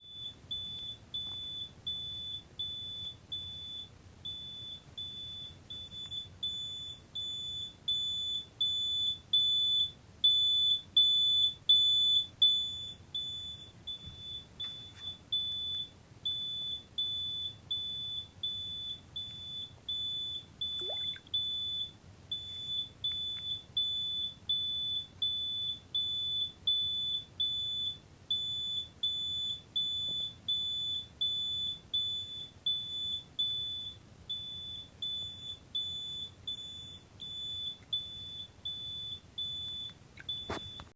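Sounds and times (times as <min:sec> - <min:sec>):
phone high-pitched beeping: 0:20.8 - 0:21.2.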